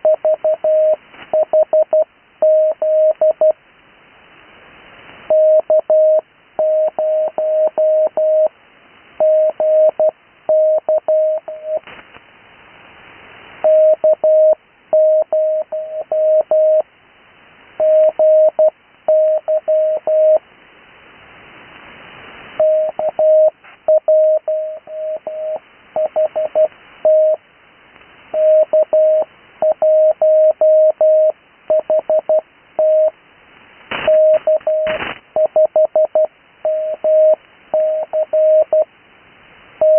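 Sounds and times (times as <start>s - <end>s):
radio receiver hiss: 11.5s - 13.7s, 33.1s - 35.5s
morse code tone: 13.6s - 16.8s, 22.6s - 27.4s, 34.1s - 38.9s.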